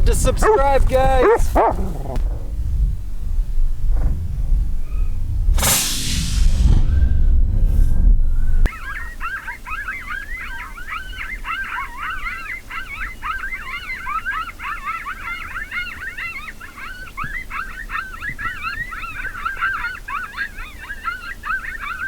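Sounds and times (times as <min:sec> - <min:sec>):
coyotes yipping and howling: 0:00.0 - 0:02.6, 0:08.6 - 0:22.0.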